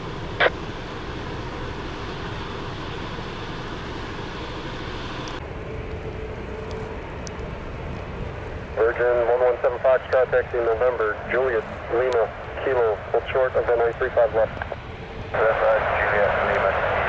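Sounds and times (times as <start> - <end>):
jet aircraft rumble: 0.0 - 17.0
radio hiss: 0.1 - 5.4, 8.8 - 17.0
radio click: 8.8 - 14.8, 15.4 - 17.0.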